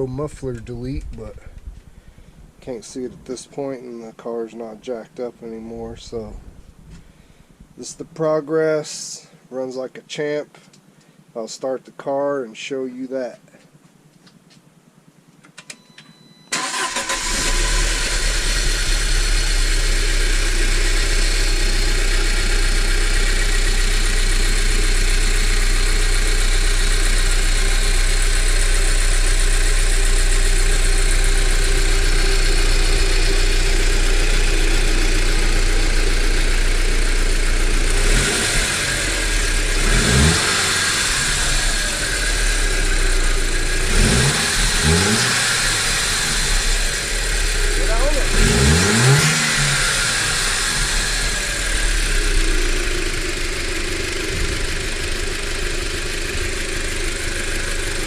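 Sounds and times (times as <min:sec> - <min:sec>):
car engine starting and idling: 0:16.5 - 0:58.0
engine revving: 0:16.5 - 0:58.0.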